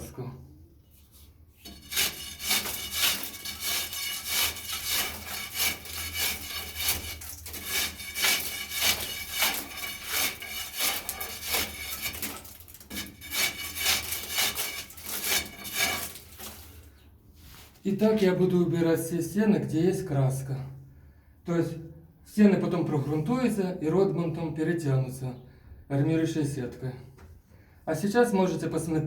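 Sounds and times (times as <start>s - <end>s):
crowbar scraping paint off wall: 1.1s - 16.9s.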